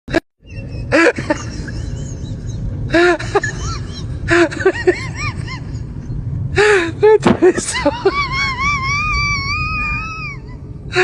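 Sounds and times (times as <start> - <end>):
steady low rumble: 0.4 - 11.0.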